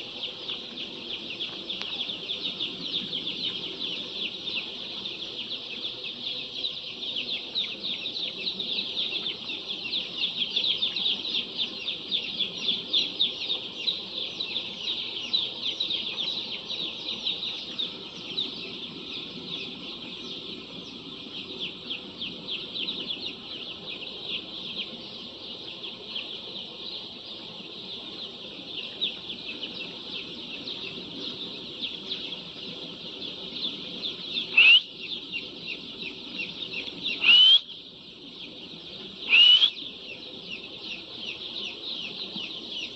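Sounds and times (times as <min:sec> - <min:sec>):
chickens peeping: 0:00.0 - 0:42.9.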